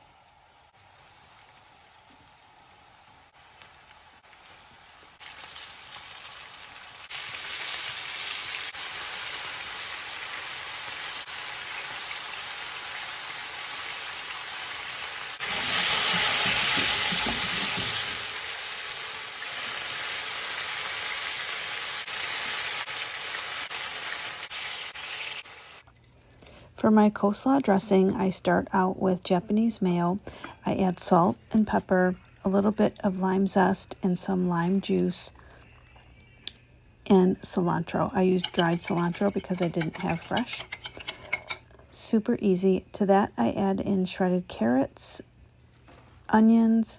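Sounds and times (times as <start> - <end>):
chicken frying in oil: 0.0 - 25.8.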